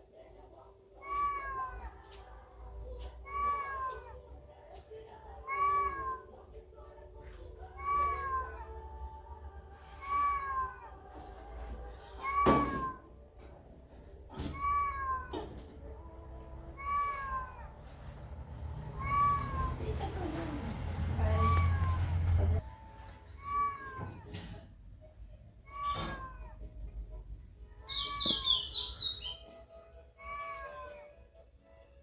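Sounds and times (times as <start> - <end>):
recorded cat meow through phone speaker: 1.0 - 1.9, 3.2 - 4.2, 5.4 - 6.4, 7.6 - 8.8, 9.8 - 11.0, 14.5 - 15.5, 16.8 - 17.7, 19.0 - 20.0, 21.3 - 22.4, 23.3 - 24.5, 25.6 - 26.6, 30.2 - 31.0.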